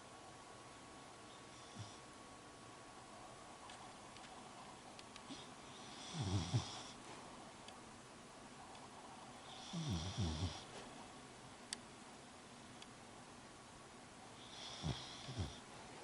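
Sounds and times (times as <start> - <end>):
dog snoring: 1.5 - 2.0, 5.3 - 7.0, 9.4 - 10.7, 14.4 - 15.6.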